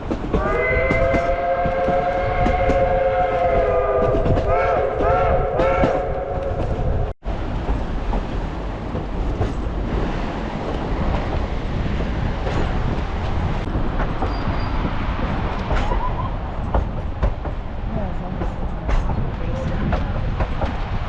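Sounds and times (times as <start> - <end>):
train rumbling along track: 0.0 - 21.0.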